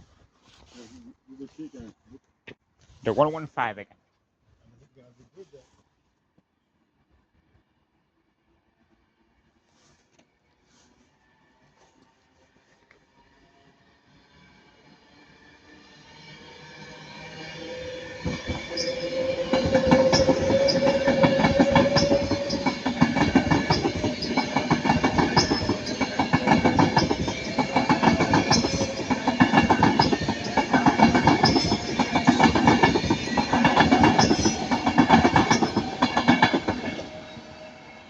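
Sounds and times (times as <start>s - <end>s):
train whine: 7.3s - 38.0s
train wheels clicking over rail joints: 18.1s - 37.2s.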